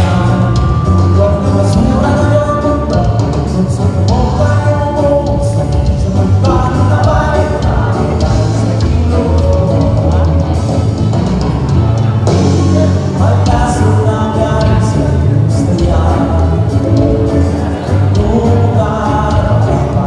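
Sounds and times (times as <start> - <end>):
bass line: 0.0 - 20.0
live rock band: 0.0 - 20.0
person singing: 0.0 - 20.0.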